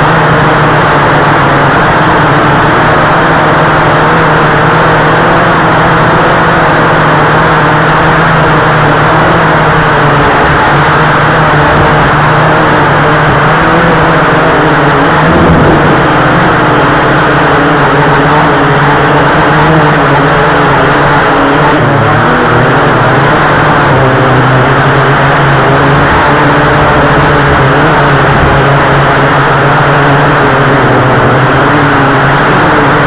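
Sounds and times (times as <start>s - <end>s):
drone motors and propellers humming: 0.0s - 33.0s.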